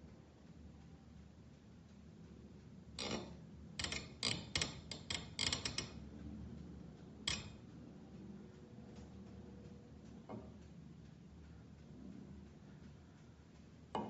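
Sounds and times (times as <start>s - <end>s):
faint low background hum: 0.0s - 14.0s.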